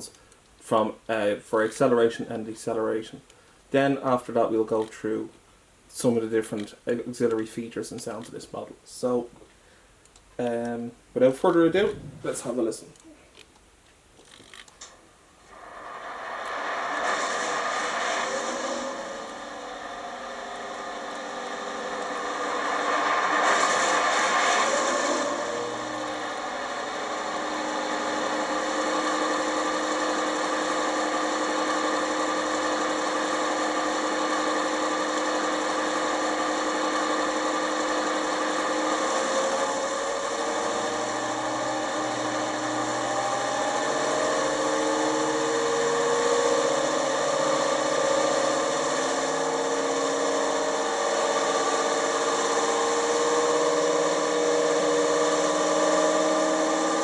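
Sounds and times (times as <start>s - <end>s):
diesel engine sound from small speaker: 19.2s - 57.0s.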